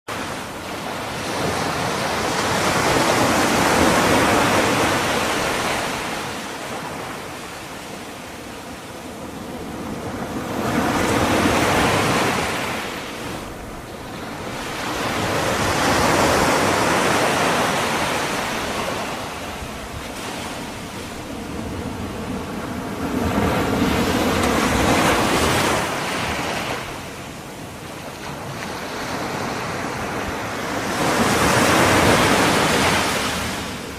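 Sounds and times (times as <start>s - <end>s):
ocean waves washing in: 0.1s - 33.9s.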